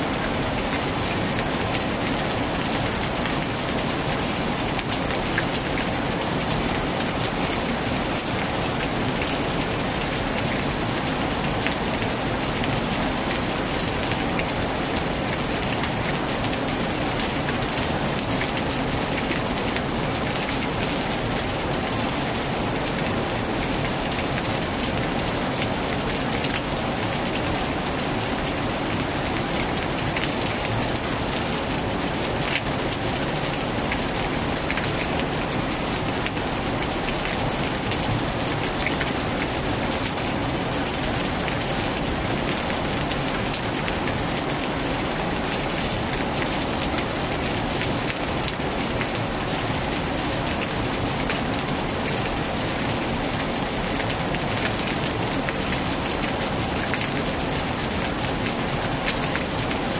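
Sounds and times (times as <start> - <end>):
heavy rain pouring: 0.0 - 59.9.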